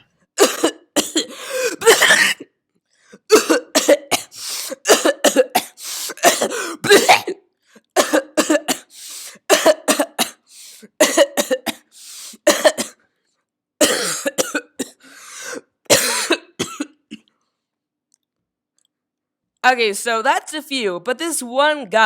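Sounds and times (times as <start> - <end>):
person fake-coughing: 0.4 - 2.5, 3.2 - 7.4, 8.0 - 13.0, 13.8 - 17.3.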